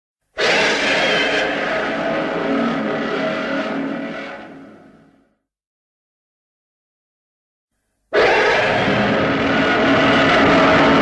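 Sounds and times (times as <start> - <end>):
monster roar: 0.4 - 5.1, 8.1 - 11.0.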